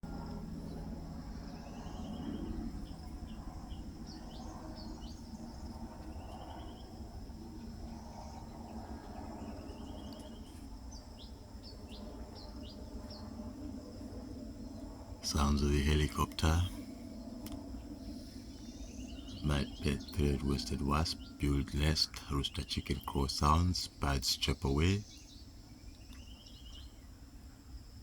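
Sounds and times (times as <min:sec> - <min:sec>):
birds buzzy trills: 0:00.1 - 0:27.6
birds sharp chirps: 0:15.2 - 0:27.1.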